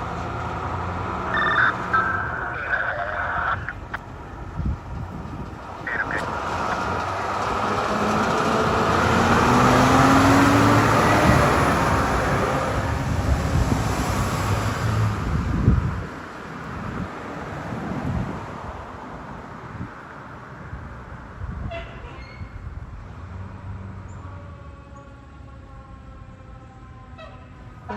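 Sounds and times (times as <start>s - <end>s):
fire truck passing: 0.0s - 21.6s, 22.6s - 27.9s
low steady horn tones: 1.3s - 3.9s, 24.4s - 27.9s.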